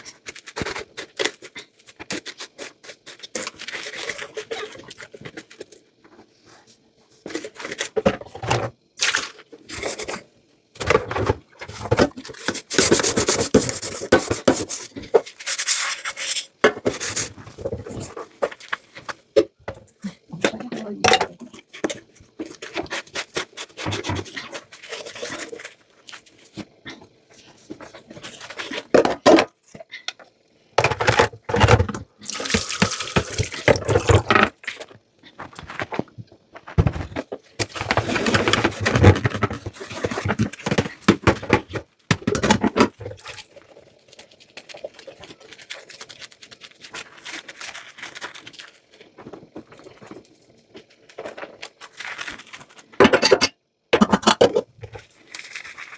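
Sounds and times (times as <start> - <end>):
running tap water: 32.3 - 34.3
dishes scrubbing and clinking: 53.0 - 54.7.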